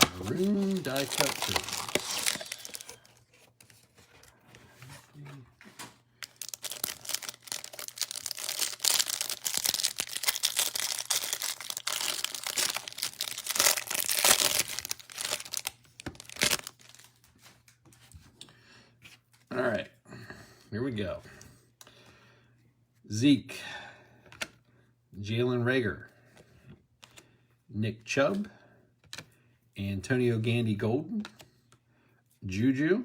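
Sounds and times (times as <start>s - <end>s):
foil wrapper tearing and crinkling: 0.0s - 3.2s, 6.2s - 17.2s.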